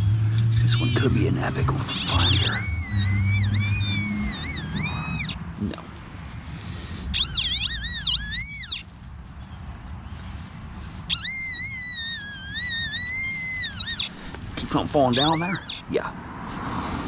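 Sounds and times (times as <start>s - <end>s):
metal detector warbling tone: 0.7s - 1.2s, 1.9s - 5.4s, 7.2s - 8.8s, 11.1s - 14.1s, 15.1s - 15.8s.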